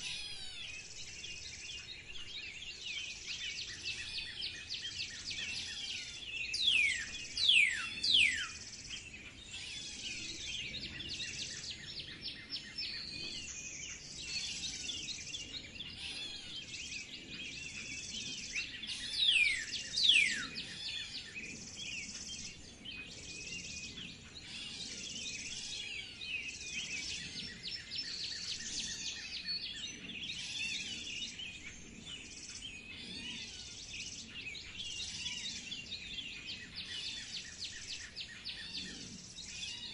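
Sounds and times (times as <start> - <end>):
songbirds chirping and trilling: 0.0 - 39.9.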